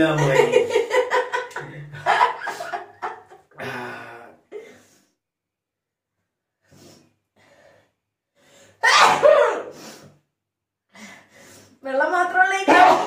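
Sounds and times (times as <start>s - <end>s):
sudden loud vocal burst: 3.6s - 4.3s
person gasping: 3.6s - 5.0s
faint breaths: 6.6s - 8.8s, 10.9s - 11.8s.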